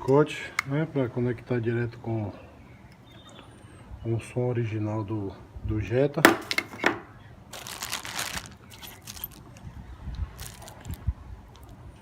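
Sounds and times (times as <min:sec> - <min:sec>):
packaged cables rustling: 0:07.5 - 0:09.6, 0:10.4 - 0:11.0.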